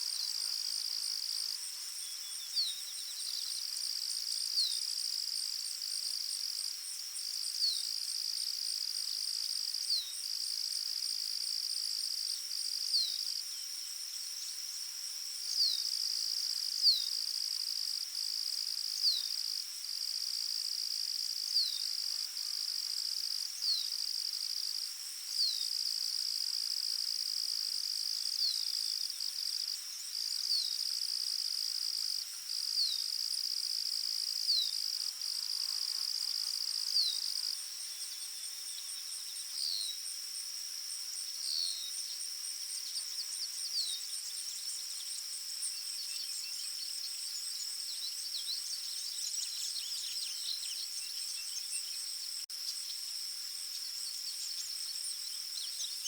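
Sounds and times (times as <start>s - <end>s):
high-pitched insect trill: 0.0s - 56.0s.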